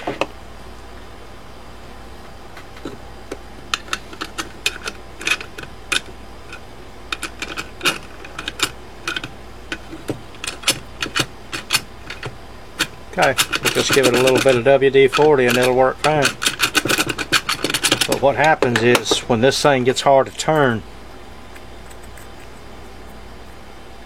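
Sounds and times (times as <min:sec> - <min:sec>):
metallic clicks of lock parts: 0:03.7 - 0:09.8, 0:10.4 - 0:19.2.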